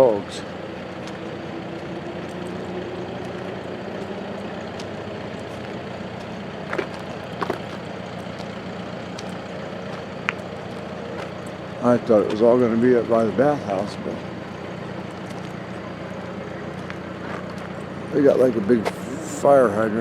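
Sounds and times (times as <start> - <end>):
engine droning: 0.0 - 20.0.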